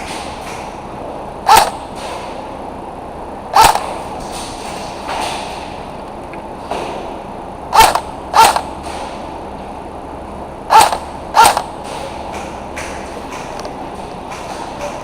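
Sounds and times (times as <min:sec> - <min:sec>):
airsoft gun shots: 0:01.5 - 0:02.4, 0:03.5 - 0:04.0, 0:07.7 - 0:09.2, 0:10.7 - 0:12.2.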